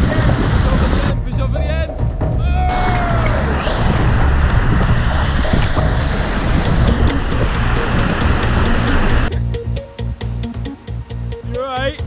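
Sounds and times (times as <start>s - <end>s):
wind buffeting microphone: 0.0s - 1.5s, 2.7s - 9.3s
background music with ticking beat: 1.1s - 2.6s, 6.4s - 12.0s.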